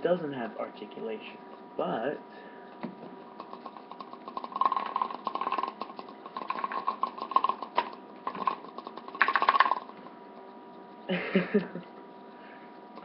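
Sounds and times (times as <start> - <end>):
bobblehead spring rattling: 3.4 - 10.1.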